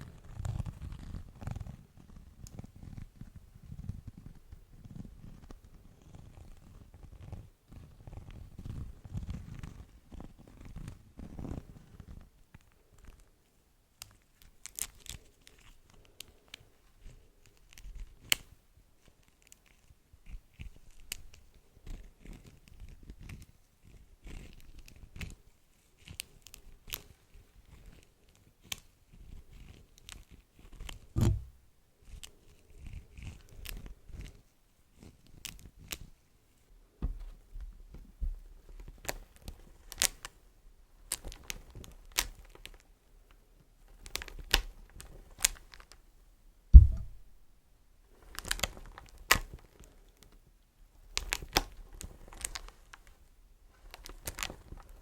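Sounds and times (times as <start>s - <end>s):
wax wrap crinkling and peeling: 14.0s - 18.4s, 38.5s - 40.4s, 41.0s - 42.9s, 43.8s - 46.0s, 48.1s - 50.3s, 51.0s - 55.0s
heavy thumps: 31.2s - 31.6s, 37.0s - 37.4s, 46.7s - 47.5s.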